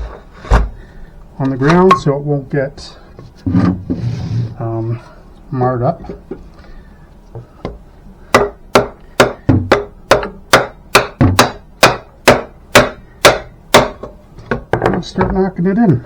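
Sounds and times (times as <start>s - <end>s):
sharp blows on wood: 8.3s - 14.1s.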